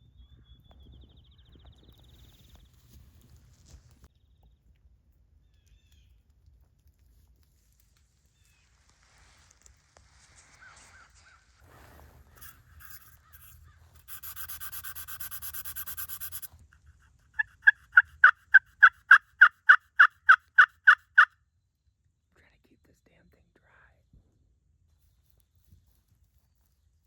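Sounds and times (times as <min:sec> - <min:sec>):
turkey call yelping: 0:17.4 - 0:21.3.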